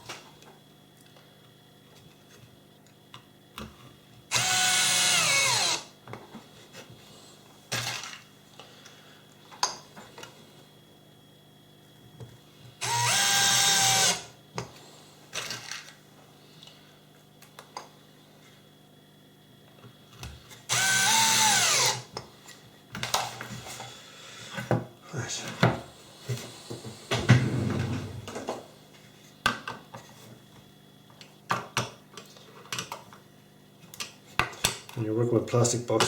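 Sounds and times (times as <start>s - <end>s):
drill-driver driving screws: 4.3s - 5.9s, 12.8s - 14.3s, 20.7s - 22.1s.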